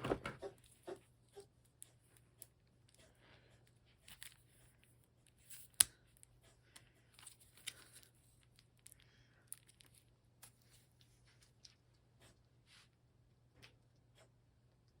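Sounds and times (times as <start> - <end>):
small clicks of game pieces: 7.2 - 10.6.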